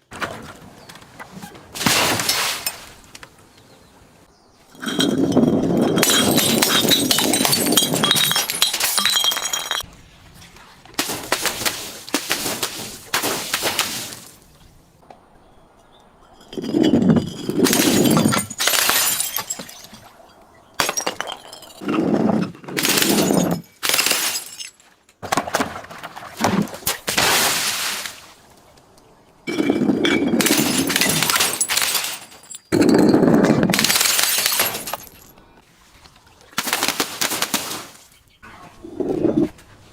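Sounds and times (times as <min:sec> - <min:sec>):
glass being crushed: 0:04.8 - 0:09.8, 0:16.4 - 0:20.1, 0:20.8 - 0:21.9, 0:22.8 - 0:24.8, 0:29.5 - 0:35.3.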